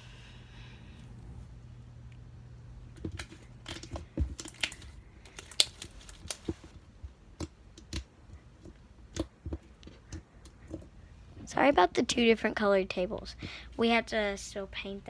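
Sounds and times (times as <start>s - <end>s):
slime squished by hand: 3.2s - 6.7s.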